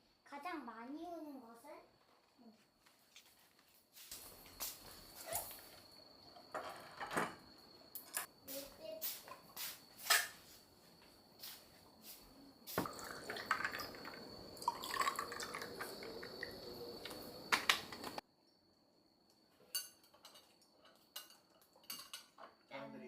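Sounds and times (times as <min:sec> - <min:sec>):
water running: 0:12.7 - 0:18.2.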